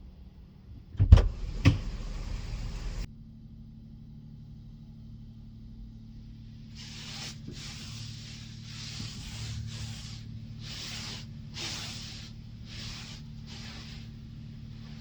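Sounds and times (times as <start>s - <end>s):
steady low hum: 0.0s - 15.0s
water spraying onto a car: 6.8s - 14.0s.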